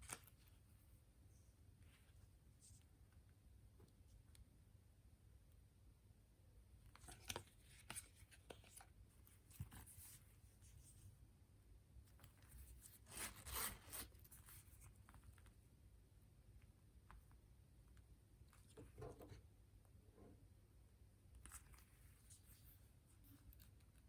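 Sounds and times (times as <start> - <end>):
rustling and scraping of handling: 6.9 - 11.2, 12.0 - 15.7, 17.0 - 20.4, 21.4 - 24.0.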